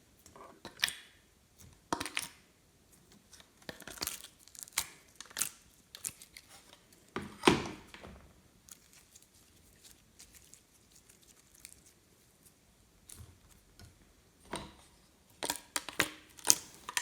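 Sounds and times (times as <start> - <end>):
slime popping and crackling: 3.7 - 6.5, 15.3 - 17.0.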